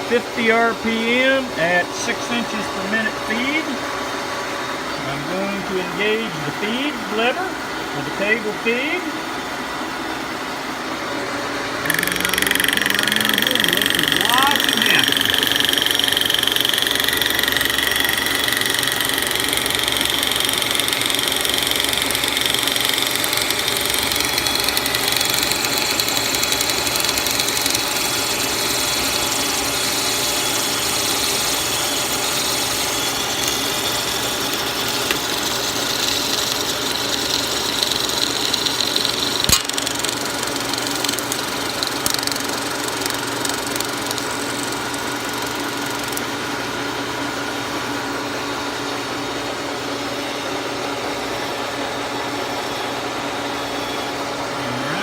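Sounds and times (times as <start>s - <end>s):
milling machine running: 0.0s - 55.0s.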